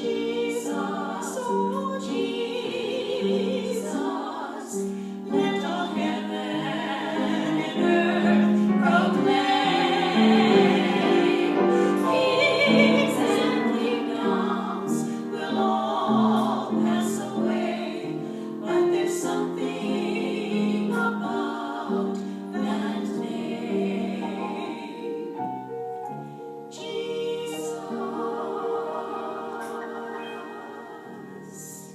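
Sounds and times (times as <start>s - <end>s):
choir singing long notes: 0.0s - 31.9s
sustained instrumental accompaniment: 5.7s - 18.4s, 25.6s - 31.9s.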